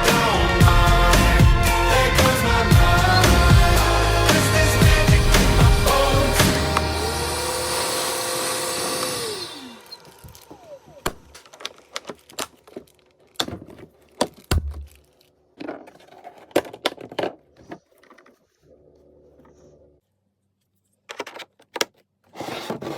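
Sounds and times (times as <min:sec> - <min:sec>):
vacuum motor winding down: 0:01.8 - 0:11.2.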